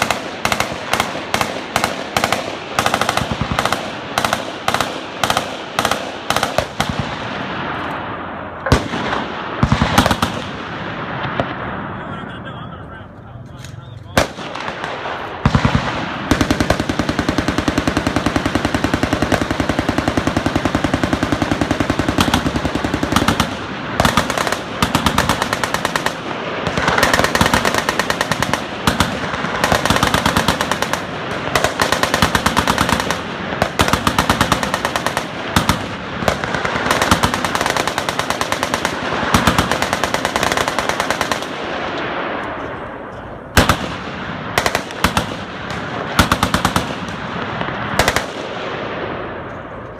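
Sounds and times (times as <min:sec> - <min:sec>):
machine guns firing bursts: 0:00.0 - 0:07.4, 0:08.7 - 0:10.6, 0:14.2 - 0:41.7, 0:43.6 - 0:48.5.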